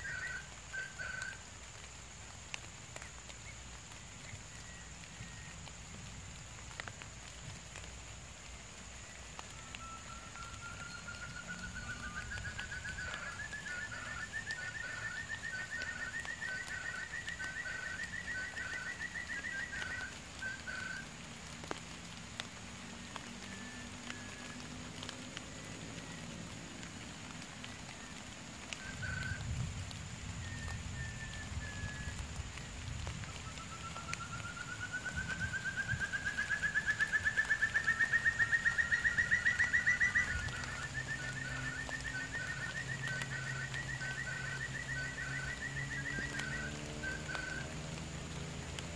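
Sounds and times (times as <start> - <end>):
quail rising trill: 9.7 - 21.1.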